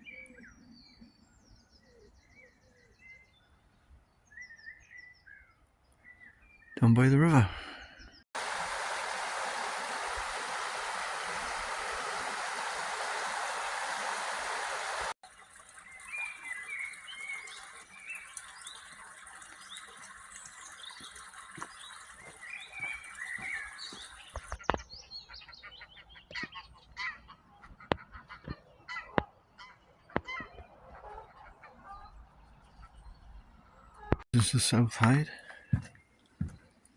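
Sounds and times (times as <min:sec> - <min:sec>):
geese honking: 0:08.4 - 0:15.6, 0:25.3 - 0:33.0
river water rushing: 0:08.4 - 0:15.6.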